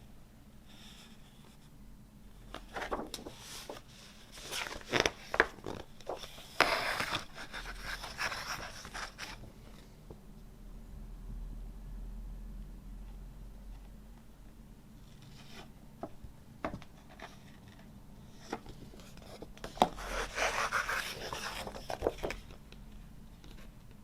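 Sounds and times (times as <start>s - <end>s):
paper and cardboard rustling: 2.5s - 9.4s, 16.7s - 22.6s.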